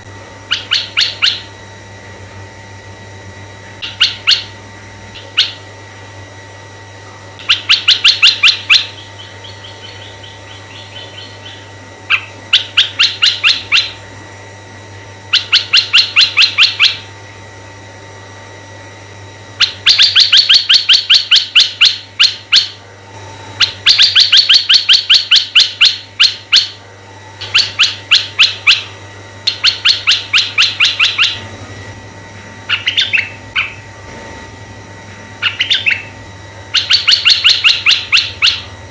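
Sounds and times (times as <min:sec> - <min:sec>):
faint steady hum: 0:00.0 - 0:38.9
bird chattering calls: 0:00.5 - 0:01.5, 0:03.8 - 0:04.6, 0:05.2 - 0:05.7, 0:07.4 - 0:14.0, 0:15.3 - 0:17.1, 0:19.6 - 0:22.8, 0:23.6 - 0:26.8, 0:27.4 - 0:31.5, 0:32.7 - 0:33.9, 0:35.4 - 0:36.1, 0:36.7 - 0:38.8.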